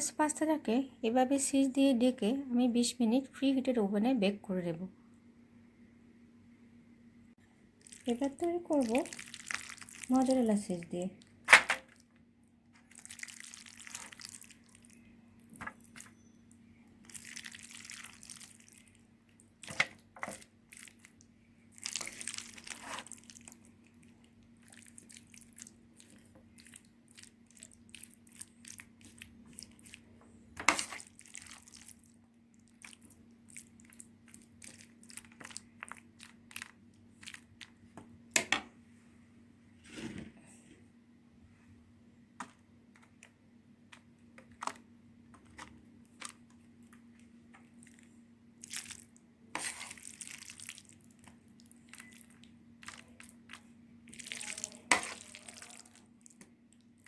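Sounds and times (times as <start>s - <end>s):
food packaging rustling: 43.9s - 48.1s.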